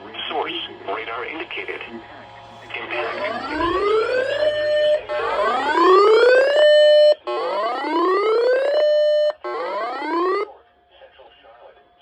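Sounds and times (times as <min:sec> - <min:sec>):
electronic siren alert tone whooping: 0:03.0 - 0:10.5.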